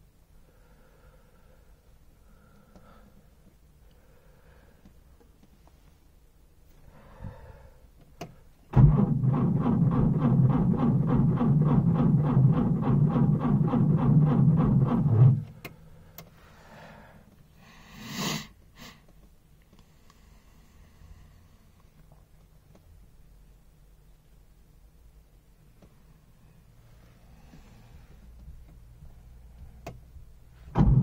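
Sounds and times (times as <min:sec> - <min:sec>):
engine cranking by starter motor: 0:08.7 - 0:15.6, 0:30.7 - 0:31.0.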